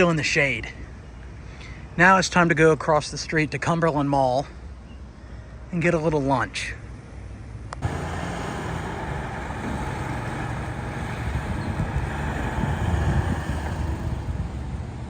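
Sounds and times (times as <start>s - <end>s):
vehicle road noise: 7.8s - 15.0s.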